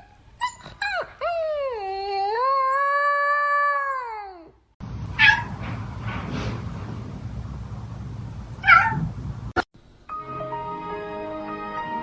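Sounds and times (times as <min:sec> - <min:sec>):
cat meowing and yowling: 0:05.2 - 0:05.5, 0:08.6 - 0:09.1.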